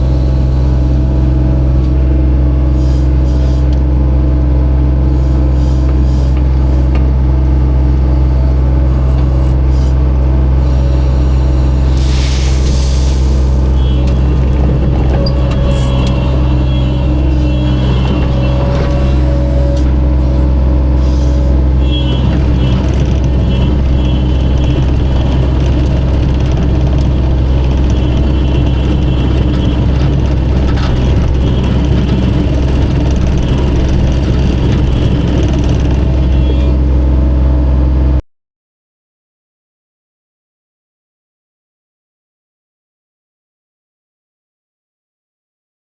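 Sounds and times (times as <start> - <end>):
engine running low drone: 0.0 - 38.2.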